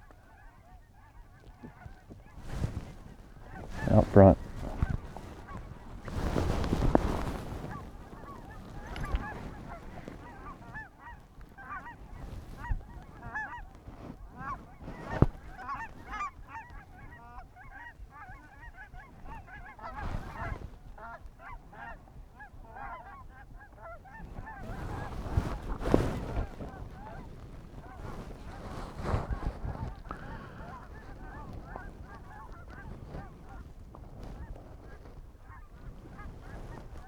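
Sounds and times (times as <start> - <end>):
geese honking: 3.4 - 5.7, 7.6 - 13.7, 14.4 - 25.1, 29.4 - 32.9.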